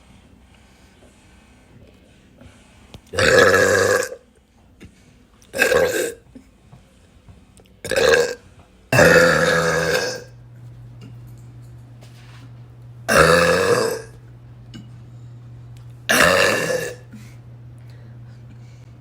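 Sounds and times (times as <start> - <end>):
woman burping loudly: 3.2 - 4.2, 5.5 - 6.2, 7.8 - 8.4, 9.0 - 10.3, 13.1 - 14.2, 16.1 - 17.2
faint low hum: 6.2 - 19.0.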